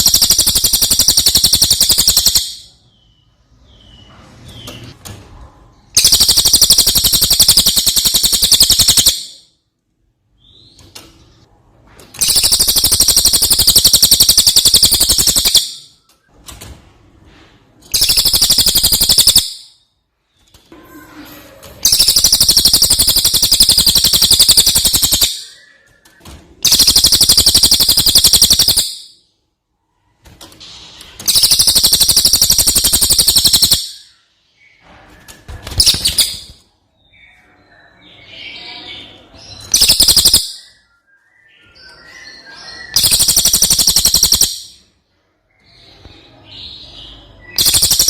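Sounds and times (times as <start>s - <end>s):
faint bird chirps: 0.0s - 9.6s, 12.2s - 16.4s, 17.3s - 48.0s
songbird buzzy trilling: 18.0s - 19.7s, 21.8s - 25.6s, 31.2s - 34.1s.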